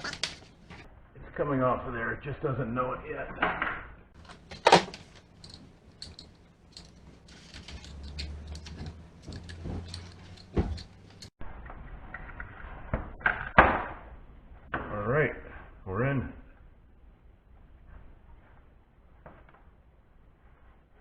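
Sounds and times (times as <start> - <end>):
tools clicking and scraping: 0.0 - 0.8, 4.2 - 11.4.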